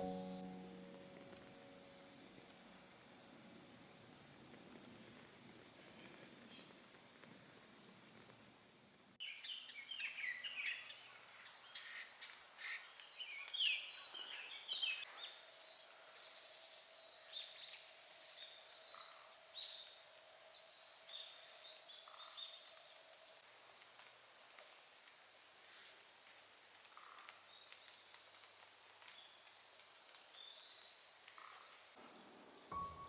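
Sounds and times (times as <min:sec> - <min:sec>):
faint steady low tone: 0:00.0 - 0:02.8, 0:32.7 - 0:33.0.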